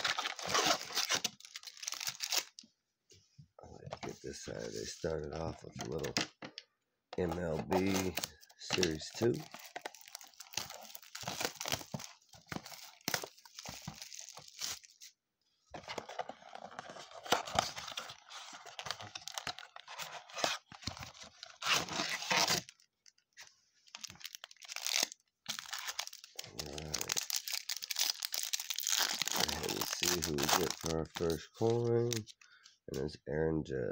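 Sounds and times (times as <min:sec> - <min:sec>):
plastic wrap tearing and crinkling: 0:00.0 - 0:02.6, 0:07.2 - 0:15.1, 0:17.1 - 0:23.2, 0:23.9 - 0:32.3.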